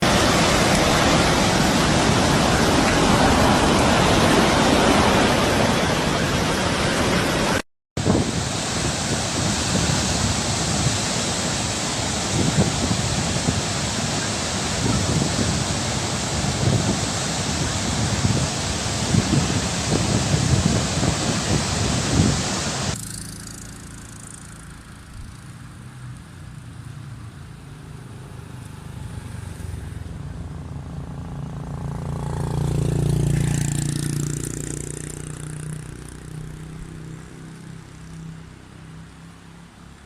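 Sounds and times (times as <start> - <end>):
wind noise: 0.0 - 23.0
rush of water: 0.0 - 30.5, 31.2 - 40.0.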